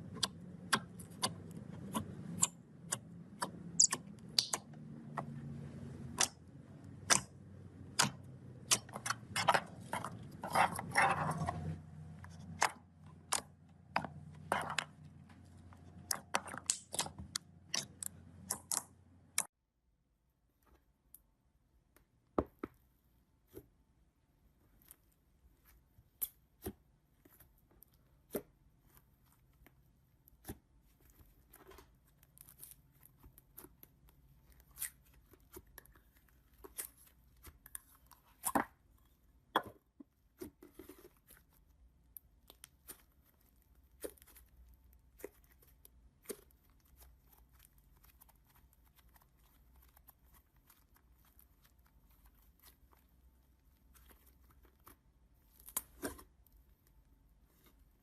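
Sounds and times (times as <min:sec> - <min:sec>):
slime popping and crackling: 0:00.1 - 0:04.7, 0:16.0 - 0:19.5.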